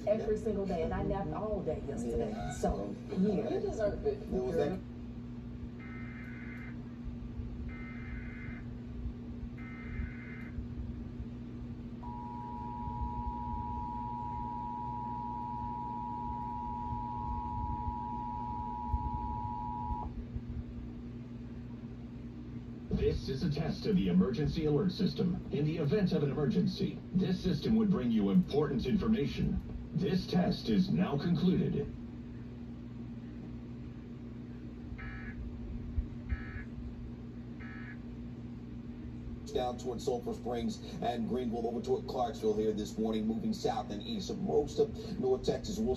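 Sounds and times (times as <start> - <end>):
steady low hum: 0.0 - 45.9
harsh two-tone alert signal: 12.0 - 20.1.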